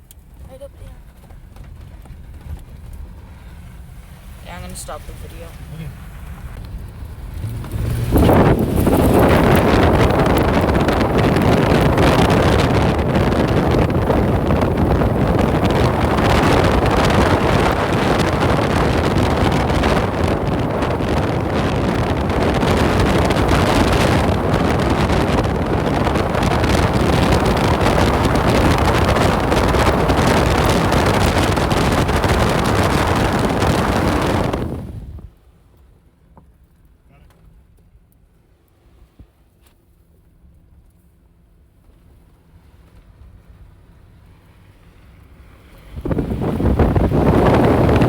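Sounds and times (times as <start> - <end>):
vehicle driving noise: 0.0 - 35.4, 41.8 - 48.0
wind rushing over microphone: 1.8 - 35.4, 45.5 - 48.0.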